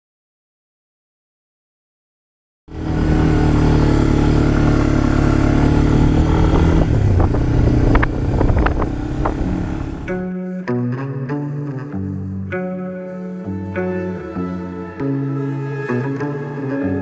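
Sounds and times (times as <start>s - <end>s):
quad bike engine running: 2.7s - 10.1s.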